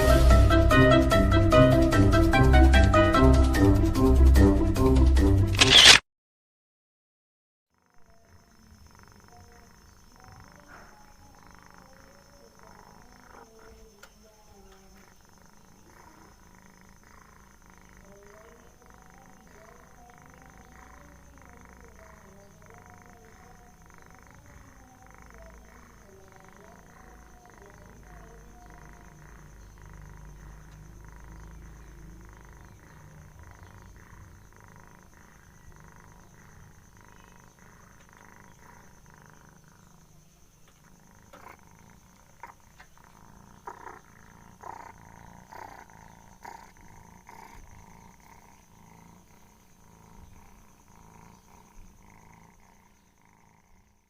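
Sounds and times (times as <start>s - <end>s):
sharp clicks: 5.5s - 6.0s
cat snoring: 7.8s - 13.9s, 14.8s - 54.0s.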